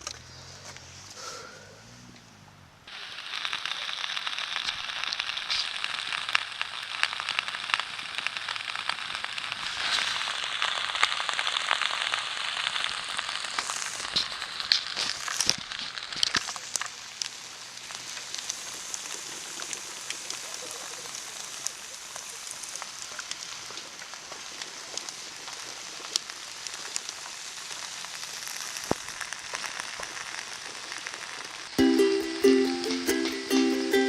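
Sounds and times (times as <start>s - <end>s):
campfire crackling and hissing: 0.0s - 34.0s.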